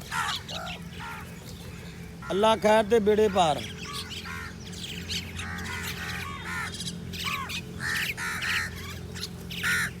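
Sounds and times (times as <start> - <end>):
crows cawing: 0.0 - 4.7, 5.3 - 10.0
steady low hum: 0.0 - 10.0.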